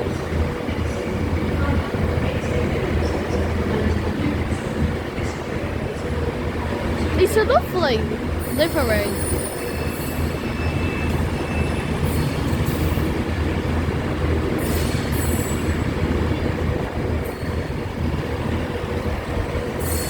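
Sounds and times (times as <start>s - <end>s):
train wheels rumbling on rail: 0.0s - 20.0s
high-pitched wheel squeals: 8.4s - 13.2s, 14.6s - 15.9s, 19.8s - 20.0s.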